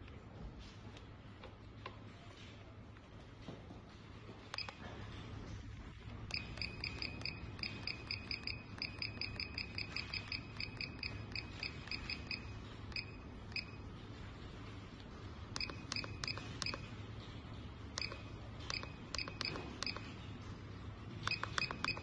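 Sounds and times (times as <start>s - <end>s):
low steady hum: 0.0s - 22.0s
high-pitched electronic beeps: 6.3s - 13.8s, 21.3s - 22.0s
clicks: 15.0s - 16.9s, 17.9s - 20.2s, 21.2s - 22.0s.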